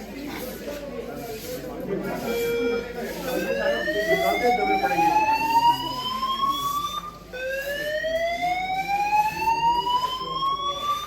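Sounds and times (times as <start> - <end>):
fire alarm rising sweep tone: 2.3 - 11.0.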